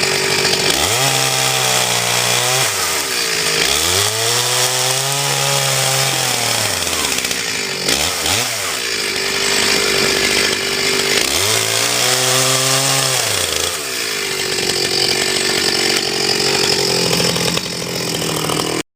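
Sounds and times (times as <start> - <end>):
log splitter motor running: 0.0 - 18.8.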